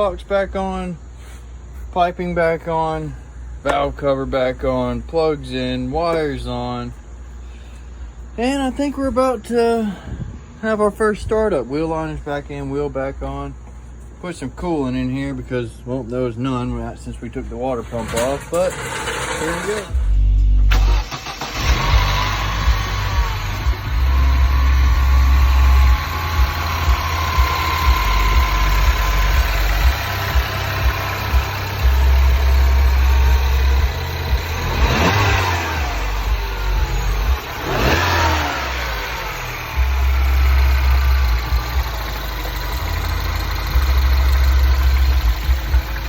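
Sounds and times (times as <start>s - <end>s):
car engine idling and revving: 17.8s - 46.0s.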